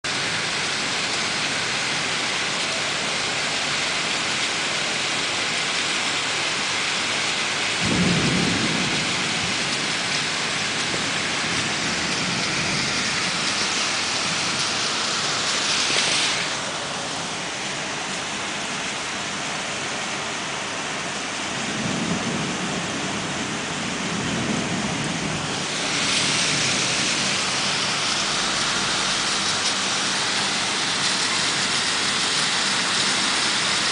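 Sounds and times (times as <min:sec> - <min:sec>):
heavy rain pouring: 0:00.0 - 0:33.9
thunder rumbling: 0:06.6 - 0:19.1, 0:21.2 - 0:33.9.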